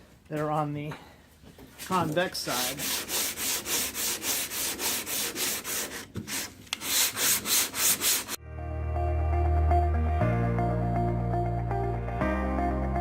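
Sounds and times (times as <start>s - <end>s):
sandpaper rasping on filler: 1.9s - 8.4s
background music: 8.4s - 13.0s.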